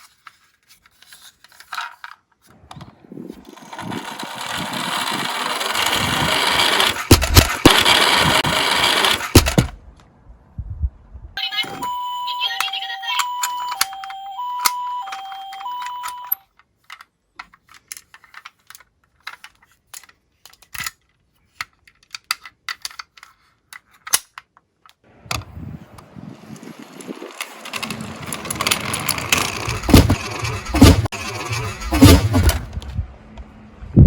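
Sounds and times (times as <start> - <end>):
toy cars rolling down a slope: 1.3 - 9.8, 26.4 - 32.7
toy two-tone siren: 11.4 - 16.4.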